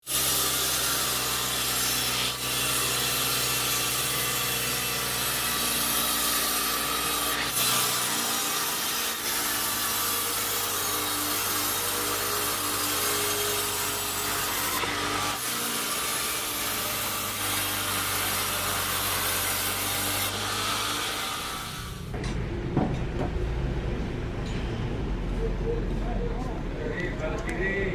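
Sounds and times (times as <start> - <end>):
saw rasping through log: 0.0 - 22.0.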